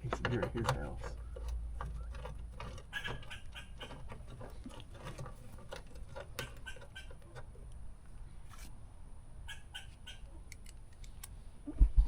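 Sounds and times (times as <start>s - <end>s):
squirrel chattering: 2.9s - 4.0s.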